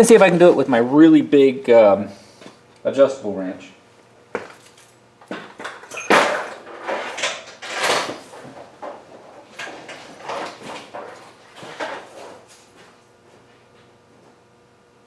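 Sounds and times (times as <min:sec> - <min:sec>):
rummaging through tools: 0:04.4 - 0:13.0.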